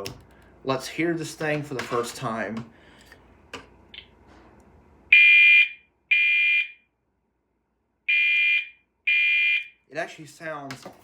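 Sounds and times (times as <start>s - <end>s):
fire alarm horn blasts: 5.1s - 6.9s, 8.1s - 9.8s.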